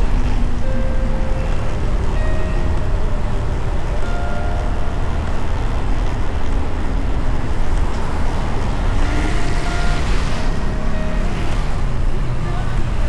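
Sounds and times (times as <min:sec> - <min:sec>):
motorcycle engine: 0:00.0 - 0:13.0
wind rumble on microphone: 0:00.0 - 0:13.0.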